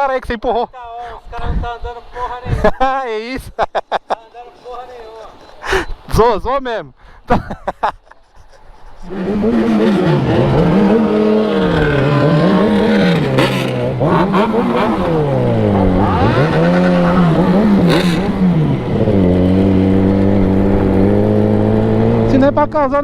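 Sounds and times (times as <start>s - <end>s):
motorcycle engine revving: 9.0s - 23.0s.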